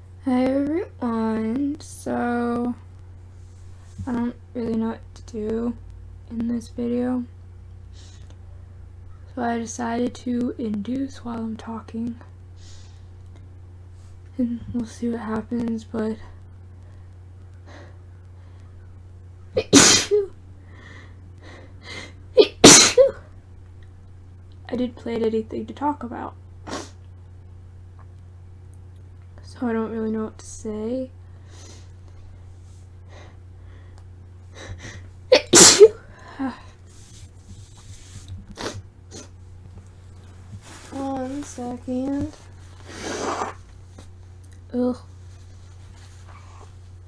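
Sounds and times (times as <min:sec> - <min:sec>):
woman sneezing: 0:19.6 - 0:20.3, 0:22.4 - 0:23.2, 0:34.7 - 0:36.0.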